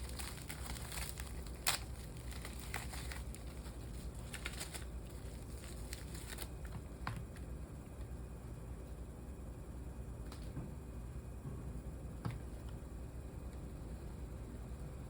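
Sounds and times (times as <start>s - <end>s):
faint crinkling: 0.0s - 7.5s.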